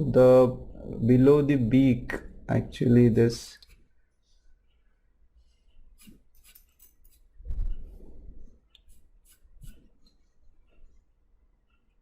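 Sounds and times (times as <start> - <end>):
pencil scratching on paper: 5.4 - 8.0, 8.8 - 10.0.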